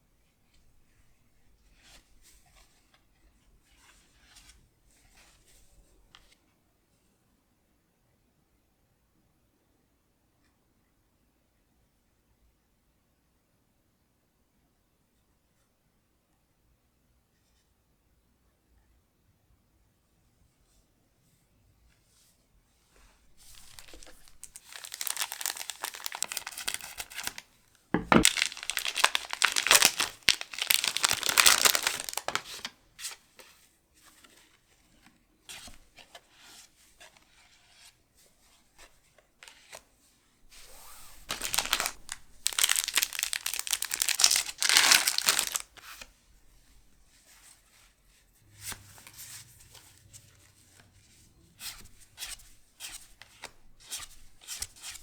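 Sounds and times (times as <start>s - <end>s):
foil wrappers tearing and crinkling: 23.5s - 27.4s, 28.0s - 32.7s, 41.1s - 45.8s.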